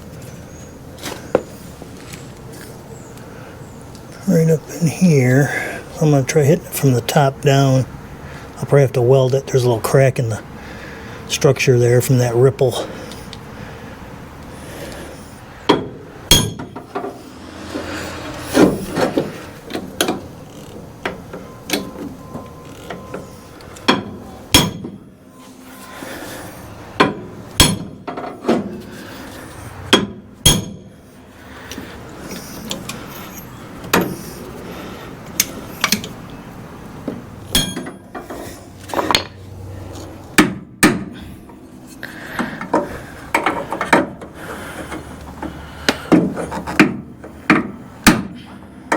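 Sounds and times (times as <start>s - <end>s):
hammer striking steel: 15.7s - 19.6s, 23.9s - 25.0s, 27.0s - 28.0s, 29.9s - 30.8s, 37.5s - 38.0s.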